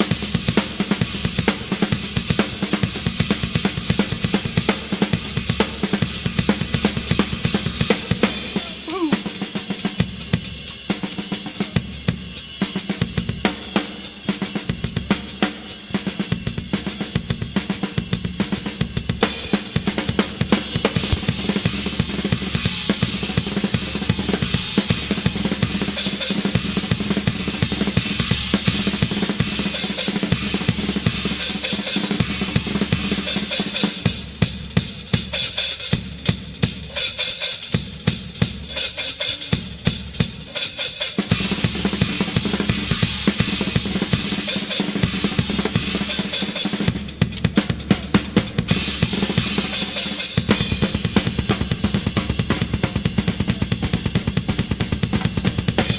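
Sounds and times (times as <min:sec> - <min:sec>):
rock drum solo: 0:00.0 - 0:55.9
cymbal crash: 0:19.3 - 0:27.4.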